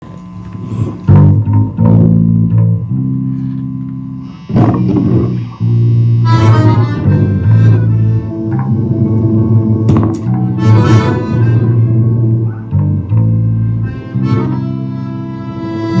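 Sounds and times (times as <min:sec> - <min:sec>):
instrumental band playing: 0:04.3 - 0:16.0.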